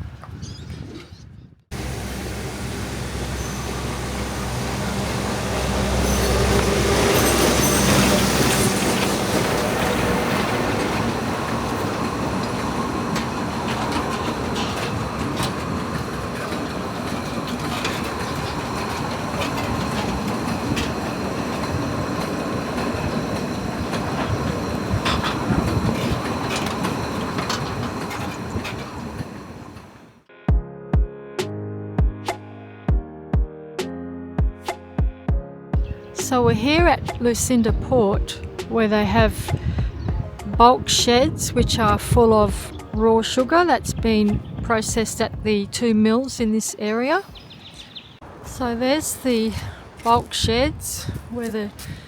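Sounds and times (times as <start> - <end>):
wagon wheels clicking: 1.7 - 30.0
train heavy rumble: 1.7 - 30.2, 35.8 - 52.0
wheel squeal: 1.8 - 30.1.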